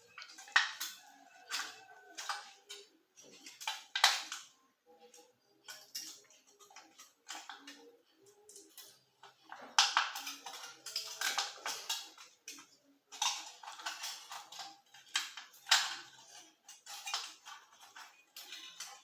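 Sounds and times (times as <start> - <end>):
beer cans crushed by hand: 9.5 - 19.0.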